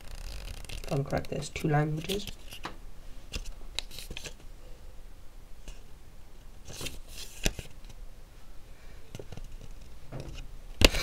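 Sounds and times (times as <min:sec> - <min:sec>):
paper pages rustling: 0:00.0 - 0:02.7, 0:03.3 - 0:04.4, 0:06.6 - 0:08.0.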